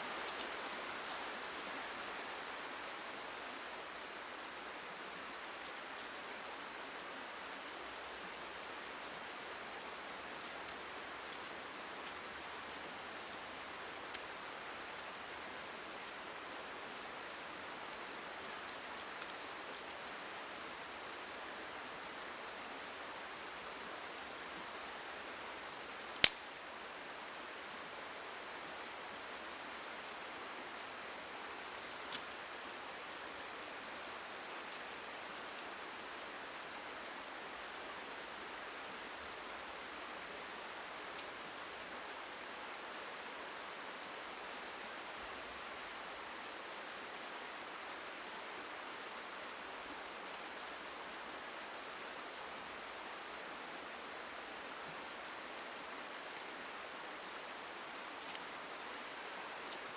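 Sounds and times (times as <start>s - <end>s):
river water rushing: 0.0s - 59.9s
faint ticks: 17.3s - 20.3s, 26.1s - 26.5s, 54.9s - 56.6s, 57.3s - 58.9s
sharp crack: 26.2s - 26.5s.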